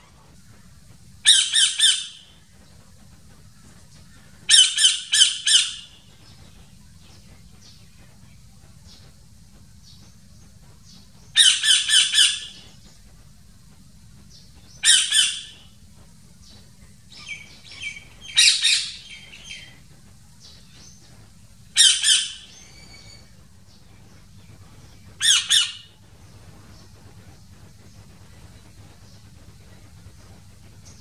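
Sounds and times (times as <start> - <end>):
faint low hum: 0.0 - 31.0
parrot calling: 1.2 - 2.3, 4.5 - 6.0, 11.4 - 12.6, 14.8 - 15.6, 17.1 - 19.8, 21.7 - 23.2, 25.2 - 26.0.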